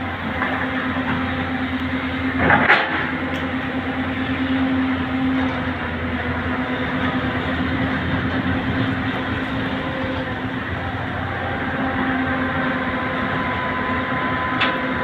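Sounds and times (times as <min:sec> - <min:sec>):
heavy diesel engine droning: 0:00.0 - 0:15.0.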